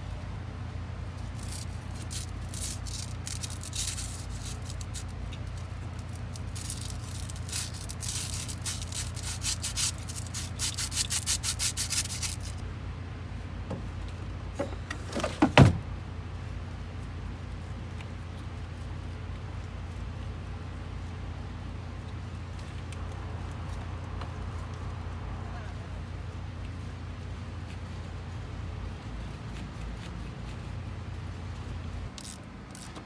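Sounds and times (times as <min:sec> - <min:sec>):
hand tool scraping strokes: 0:01.3 - 0:12.6.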